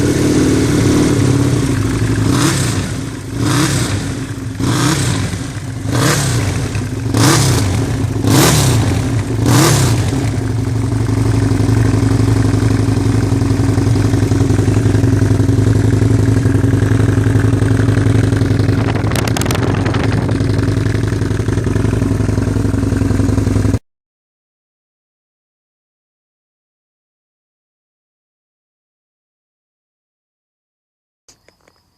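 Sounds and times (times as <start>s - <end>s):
motorcycle engine revving and idling: 0.0s - 23.8s.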